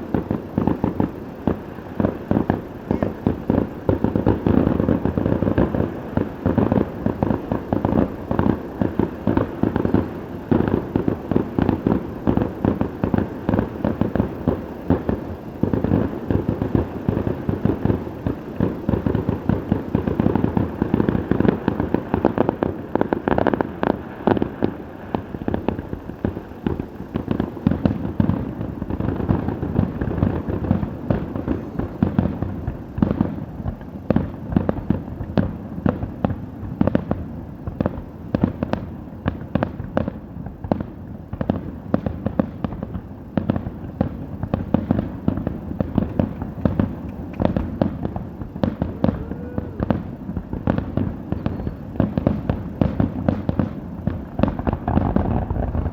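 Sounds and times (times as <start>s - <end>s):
rapid fireworks bangs: 0.0s - 55.9s.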